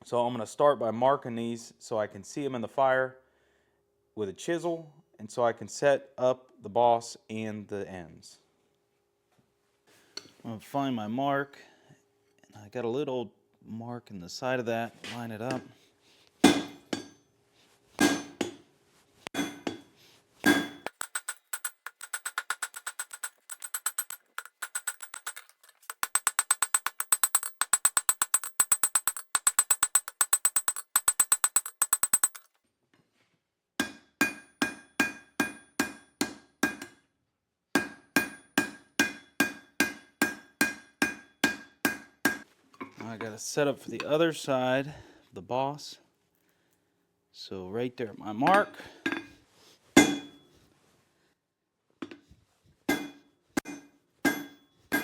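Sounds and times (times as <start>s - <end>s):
hammer striking steel on anvil: 16.4s - 17.2s, 18.0s - 18.6s, 19.3s - 32.4s, 33.8s - 37.0s, 37.8s - 42.4s, 50.0s - 50.4s, 52.9s - 55.0s
metal ringing: 19.4s - 32.4s.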